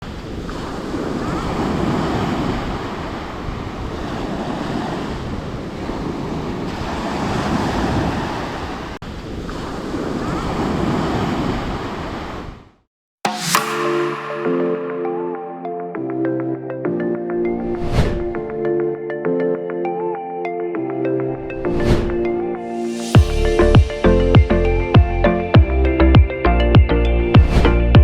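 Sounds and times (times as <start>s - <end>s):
sea surf washing onto beach: 0.3s - 12.4s.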